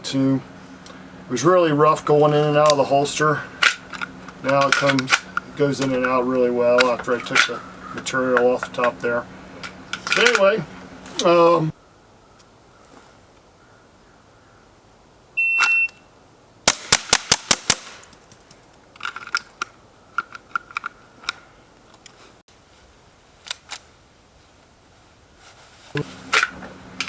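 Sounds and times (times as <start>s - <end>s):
shot timer beep: 15.4s - 16.0s
rapid pistol shots: 16.7s - 18.1s.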